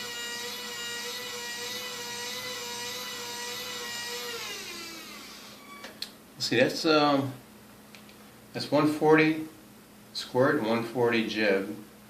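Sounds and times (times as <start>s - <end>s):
model crane motor whining: 0.0s - 5.9s.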